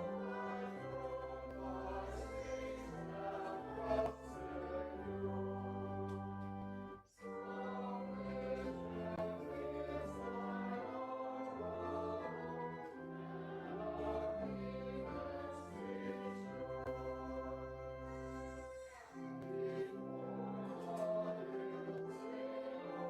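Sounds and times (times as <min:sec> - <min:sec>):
slow sustained church music: 0:00.0 - 0:23.0.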